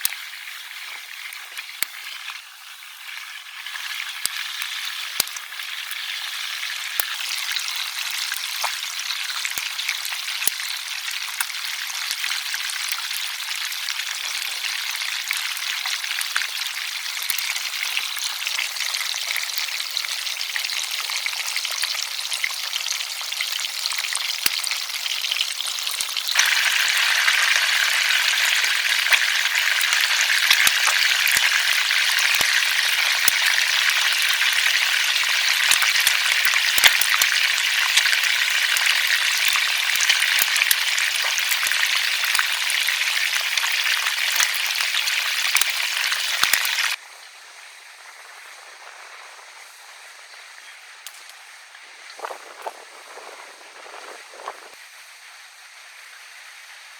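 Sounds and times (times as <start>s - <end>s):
fish frying in hot oil: 0.0s - 56.9s.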